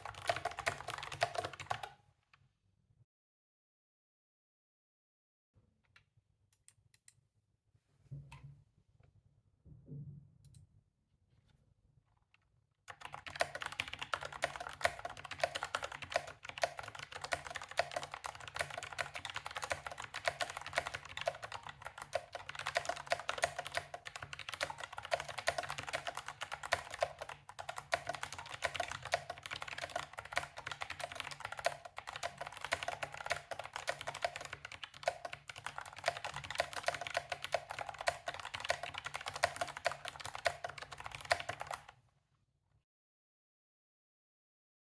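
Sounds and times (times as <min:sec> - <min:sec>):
fast typing on mechanical keyboard: 0:00.0 - 0:02.0, 0:12.9 - 0:42.0.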